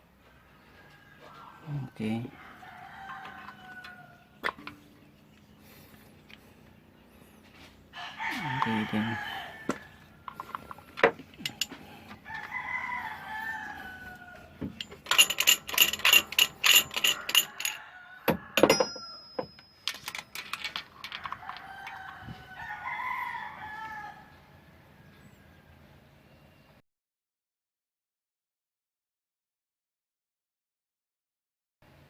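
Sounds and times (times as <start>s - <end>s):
rooster crowing: 0.2s - 4.4s, 7.9s - 10.6s, 11.4s - 19.4s, 21.0s - 25.6s.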